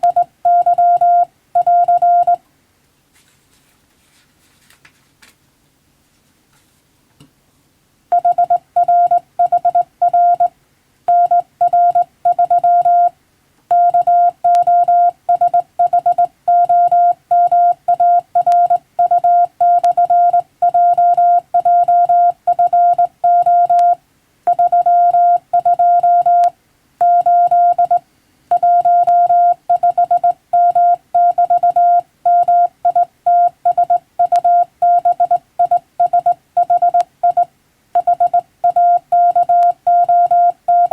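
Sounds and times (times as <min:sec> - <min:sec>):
morse code beeping: 0:00.0 - 0:02.4, 0:08.1 - 0:10.5, 0:11.1 - 0:13.1, 0:13.7 - 0:40.9.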